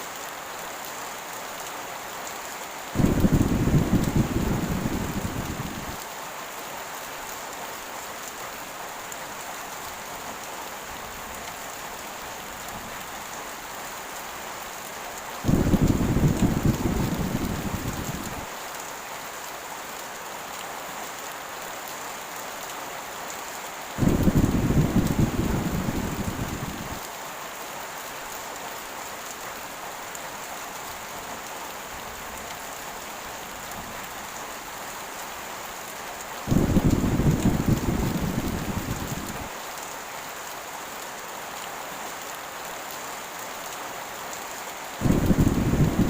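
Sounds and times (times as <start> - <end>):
heavy rain: 0.0 - 46.0
thunder rumbling: 3.0 - 6.0, 15.4 - 18.5, 24.0 - 27.0, 36.5 - 39.5, 45.0 - 46.0.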